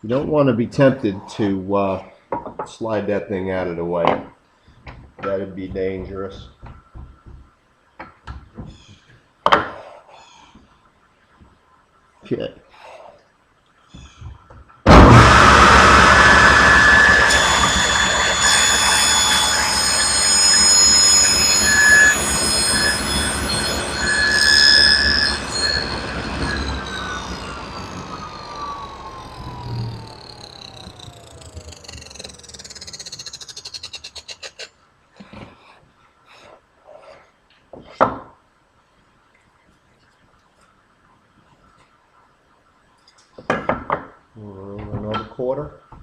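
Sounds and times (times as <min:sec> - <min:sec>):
table saw whining: 0:14.9 - 0:34.7.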